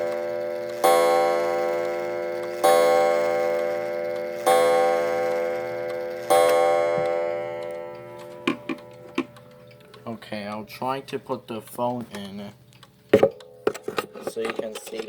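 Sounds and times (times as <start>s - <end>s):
clock gong ringing: 0.0s - 9.8s.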